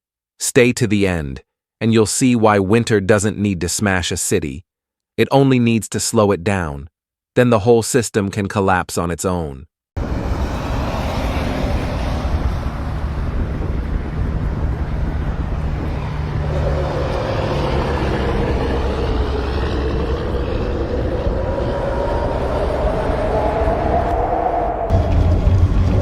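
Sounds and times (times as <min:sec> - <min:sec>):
engine tone rising and falling: 0:10.0 - 0:26.0
road and wind noise: 0:10.0 - 0:26.0
vehicle low rumble: 0:10.0 - 0:26.0.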